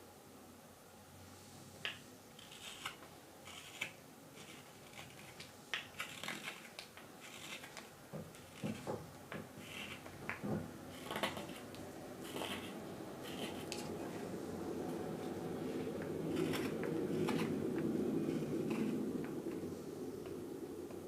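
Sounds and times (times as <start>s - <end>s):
steady low hum: 0.0s - 21.0s
carving knife cutting wood: 1.9s - 10.1s, 10.9s - 13.9s, 16.3s - 19.0s.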